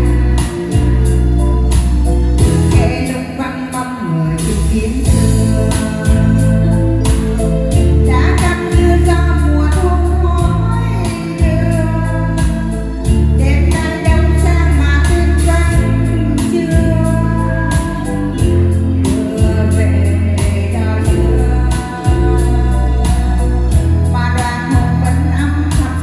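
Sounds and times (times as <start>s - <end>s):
woman singing: 0.0s - 1.7s, 2.4s - 26.0s
heavy bass notes: 0.0s - 3.2s, 4.4s - 26.0s
backing track with drum beat: 0.0s - 3.4s, 4.4s - 26.0s.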